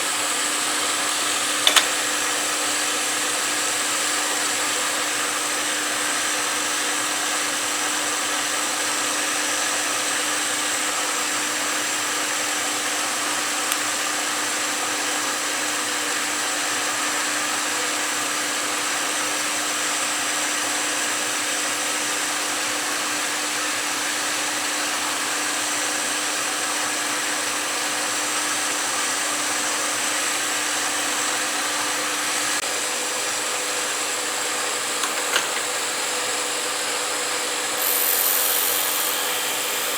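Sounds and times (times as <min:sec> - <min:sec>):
lathe motor hum: 0:37.8 - 0:39.9.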